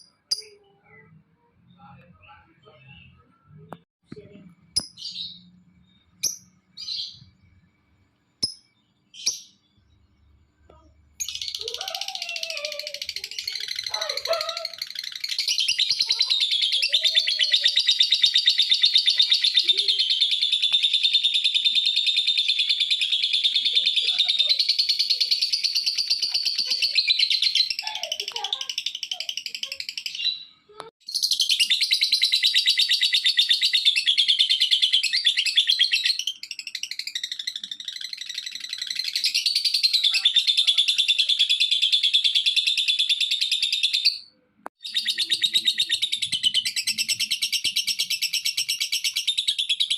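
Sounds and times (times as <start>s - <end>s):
lovebird chattering song: 11.2s - 49.9s.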